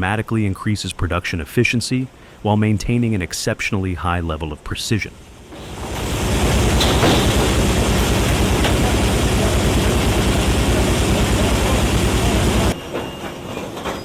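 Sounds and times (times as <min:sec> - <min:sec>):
quiet machine sound: 0:05.2 - 0:12.8.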